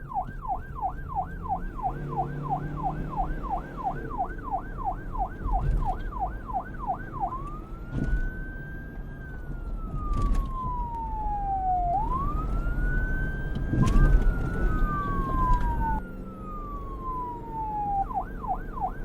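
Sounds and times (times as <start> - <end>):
police siren: 0.0 - 19.0.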